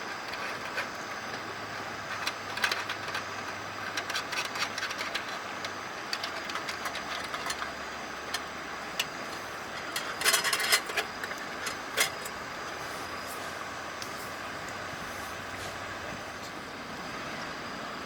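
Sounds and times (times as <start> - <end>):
fire hissing: 11.1 - 18.0.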